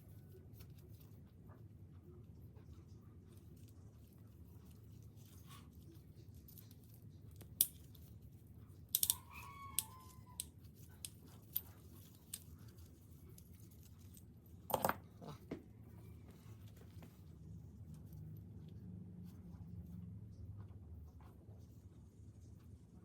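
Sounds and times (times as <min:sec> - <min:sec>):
metal parts and tools clicking: 0:07.4 - 0:08.0, 0:08.9 - 0:12.8, 0:13.4 - 0:15.0.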